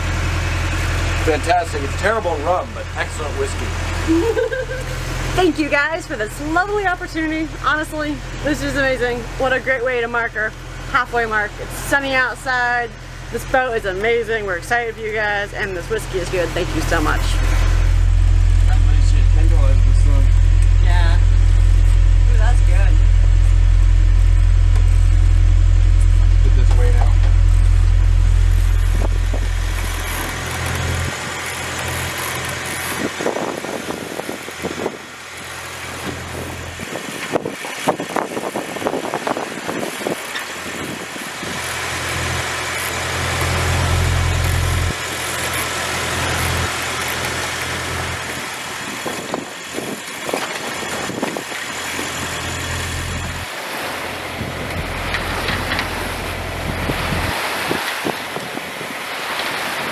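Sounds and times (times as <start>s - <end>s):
deep rumble: 0.0s - 59.4s
wind gusting on microphone: 27.1s - 41.6s, 48.3s - 59.9s
sea water rushing: 27.1s - 59.9s.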